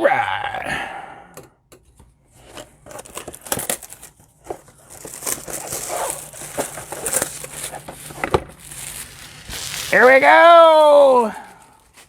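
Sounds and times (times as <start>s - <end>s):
cellophane crinkling and tearing: 2.4s - 12.0s.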